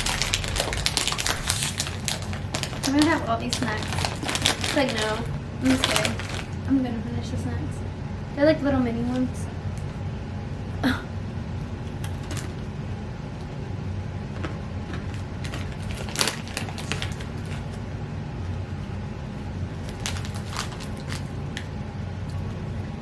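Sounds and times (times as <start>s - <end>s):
person chewing crunchy snacks: 0.0s - 6.6s, 15.5s - 17.8s, 19.8s - 21.4s
low hum: 0.0s - 23.0s.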